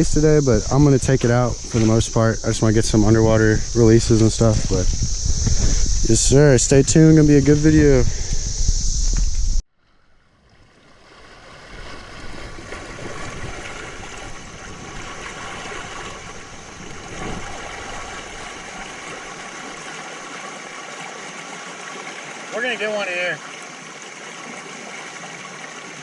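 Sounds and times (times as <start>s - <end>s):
creek water flowing: 9.8s - 26.0s.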